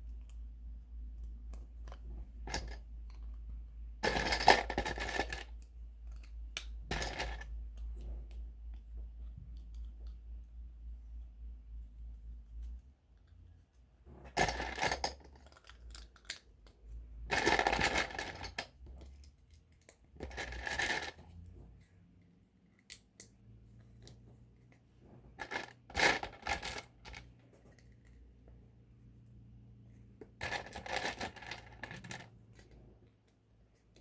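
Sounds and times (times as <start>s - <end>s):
plastic toy bricks clattering: 4.0s - 7.5s, 17.2s - 18.7s, 25.4s - 27.3s, 30.4s - 32.7s.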